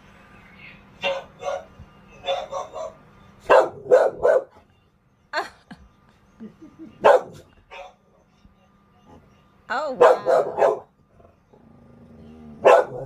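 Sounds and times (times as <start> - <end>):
dog barking: 1.0 - 4.6, 7.0 - 8.0, 10.0 - 10.9, 12.6 - 13.0.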